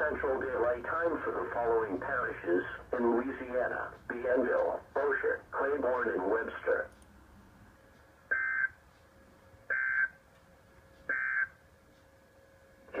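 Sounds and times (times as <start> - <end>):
digital data tone bursts: 8.3 - 8.7, 9.7 - 10.2.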